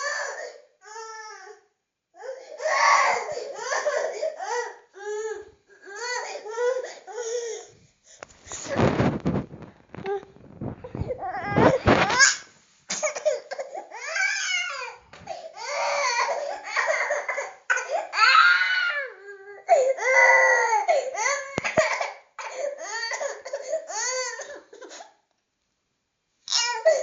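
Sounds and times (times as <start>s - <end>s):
baby crying angrily: 2.2s - 7.6s, 13.4s - 15.0s, 15.6s - 24.6s, 26.5s - 27.0s.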